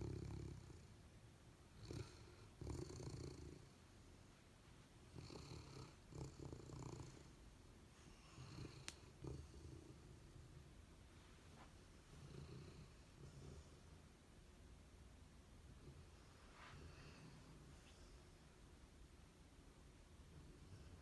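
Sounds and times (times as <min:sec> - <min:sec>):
dog snoring softly: 0:00.0 - 0:01.0, 0:01.7 - 0:03.8, 0:05.1 - 0:07.4, 0:08.0 - 0:10.5, 0:12.1 - 0:14.0, 0:15.8 - 0:18.3.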